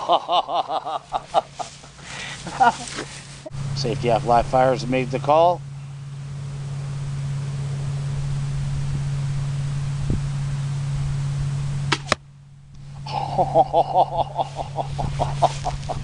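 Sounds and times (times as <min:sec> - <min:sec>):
low hum: 0:00.0 - 0:16.0
bolt striking target: 0:11.9 - 0:12.3.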